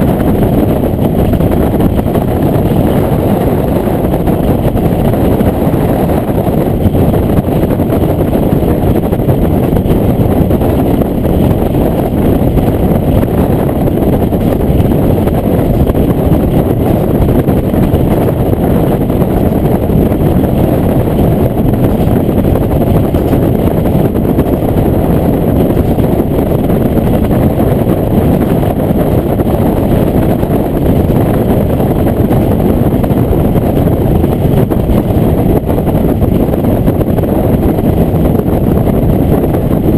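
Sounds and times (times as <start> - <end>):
railcar engine and wheels rumbling: 0.0 - 38.4.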